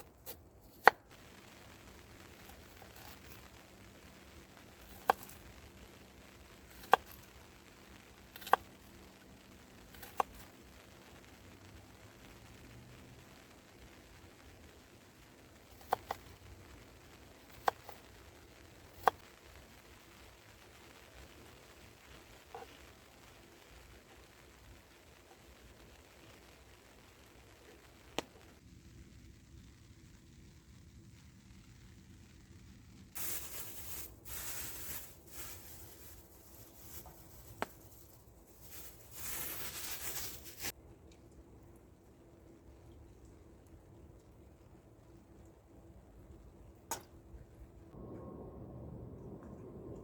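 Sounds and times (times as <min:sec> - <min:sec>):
faint steady hiss: 0:00.0 - 0:50.0
scraping and rustling: 0:33.2 - 0:40.7.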